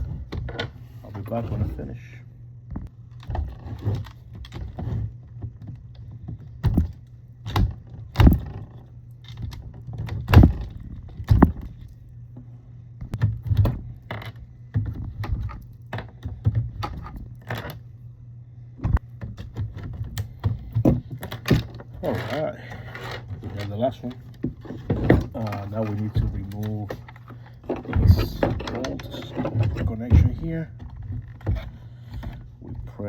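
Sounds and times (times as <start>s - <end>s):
steady low hum: 0.0s - 33.0s
plastic parts clicking and rattling: 18.9s - 33.0s.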